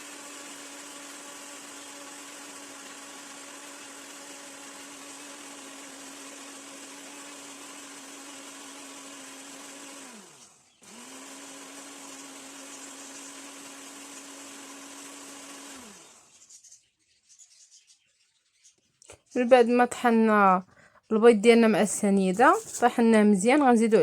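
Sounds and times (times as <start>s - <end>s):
electric mixer motor: 0.0s - 16.7s.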